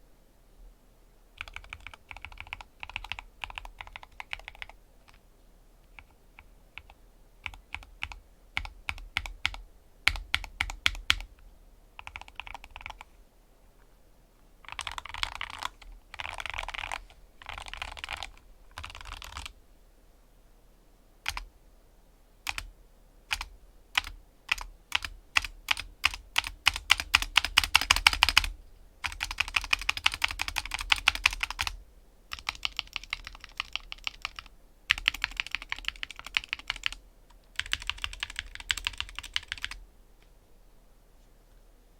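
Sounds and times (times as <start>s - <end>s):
keyboard keys clicking: 1.4s - 5.2s, 6.0s - 11.3s, 12.0s - 13.1s, 14.6s - 19.5s, 21.2s - 21.5s, 22.4s - 22.7s, 23.3s - 39.8s.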